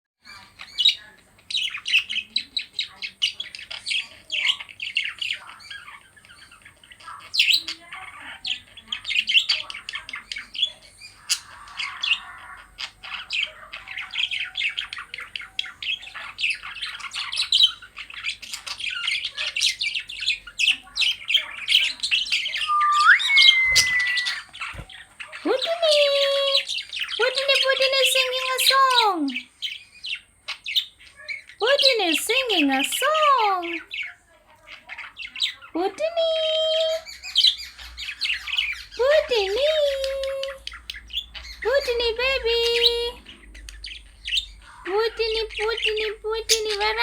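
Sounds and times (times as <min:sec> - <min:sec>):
budgerigar chirping and squawking: 0:00.2 - 0:35.8, 0:37.0 - 0:47.0
rising whistle: 0:22.6 - 0:24.5.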